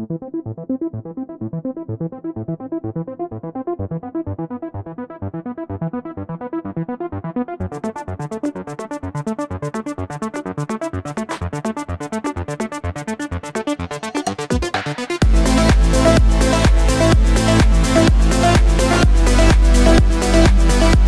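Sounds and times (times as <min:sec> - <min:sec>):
electronic music with synth beat: 0:05.4 - 0:21.0.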